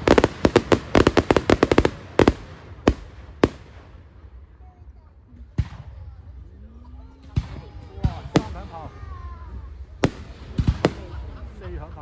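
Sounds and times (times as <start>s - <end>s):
fireworks bangs: 0.0s - 4.4s, 7.3s - 12.0s.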